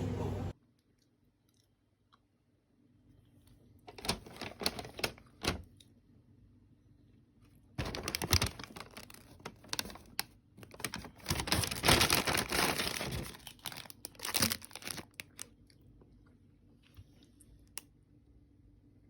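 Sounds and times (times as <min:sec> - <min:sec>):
wrapping crinkling and tearing: 0:03.9 - 0:05.6, 0:07.8 - 0:15.5.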